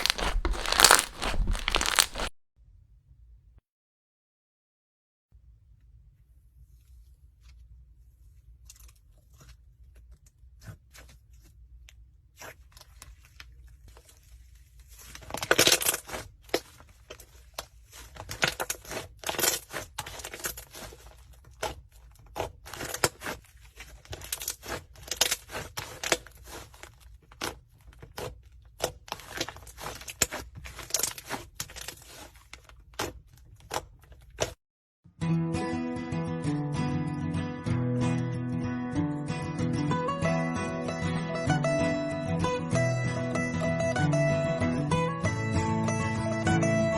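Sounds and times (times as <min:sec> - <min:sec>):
slime squeezed by hand: 0:00.0 - 0:02.3.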